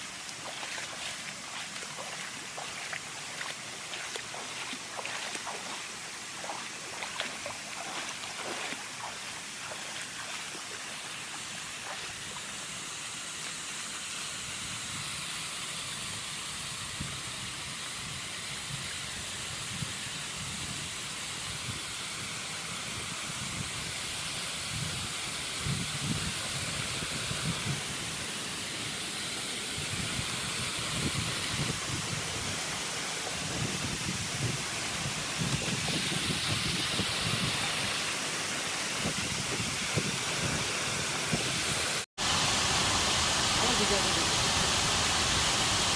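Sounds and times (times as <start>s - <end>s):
waterfall rushing: 0.0s - 14.1s, 26.2s - 45.9s.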